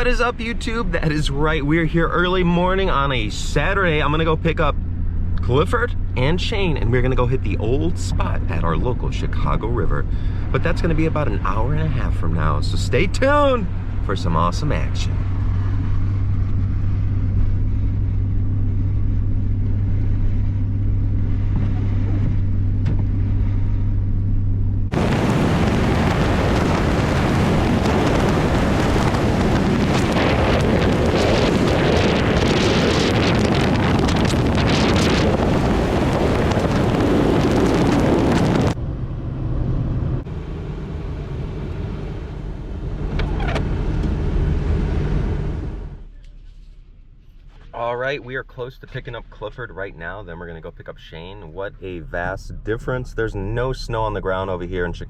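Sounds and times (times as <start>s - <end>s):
car engine and road drone: 0.0s - 55.0s
rush of wind noise: 24.9s - 42.2s.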